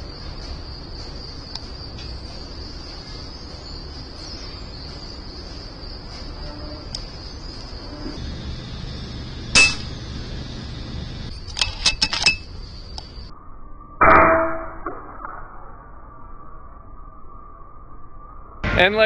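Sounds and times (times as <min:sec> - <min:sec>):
crickets trilling: 0:00.0 - 0:13.5
metallic clang: 0:09.5 - 0:10.0, 0:14.0 - 0:14.9.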